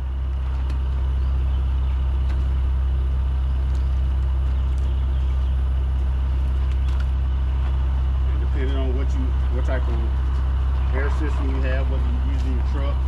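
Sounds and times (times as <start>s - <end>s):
truck engine idling: 0.0s - 13.0s.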